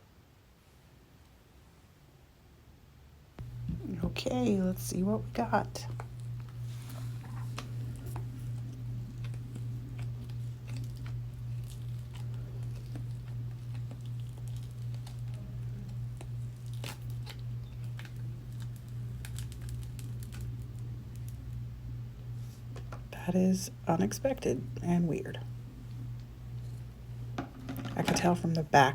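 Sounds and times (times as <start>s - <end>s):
steady low hum: 3.4s - 28.9s
resin pieces clicking and peeling: 7.2s - 21.4s.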